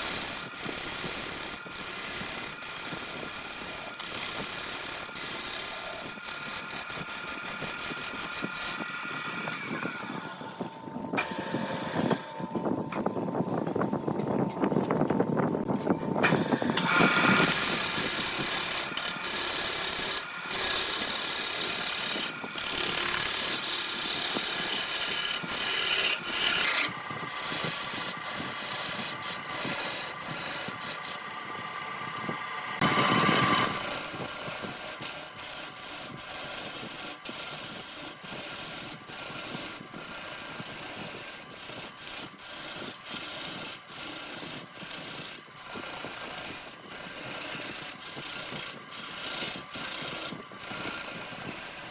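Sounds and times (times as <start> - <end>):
hand tool rasping on lathe wood: 0.0 - 8.8, 16.9 - 31.2, 33.6 - 51.9
lathe motor tone: 16.8 - 51.9.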